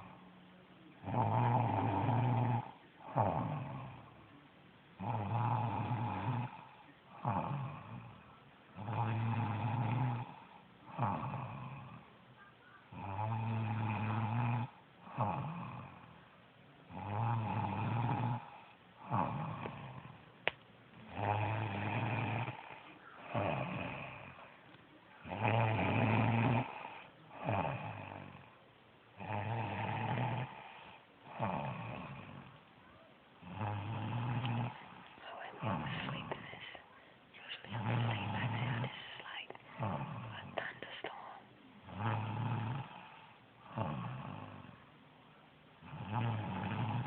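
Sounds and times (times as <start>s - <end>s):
woman snoring loudly: 1.0s - 4.1s, 5.0s - 8.2s, 8.8s - 12.1s, 12.9s - 16.1s, 16.9s - 20.2s, 21.0s - 24.5s, 25.2s - 28.5s, 29.2s - 32.5s, 33.4s - 36.5s, 37.7s - 40.8s, 41.8s - 44.8s, 45.8s - 47.0s.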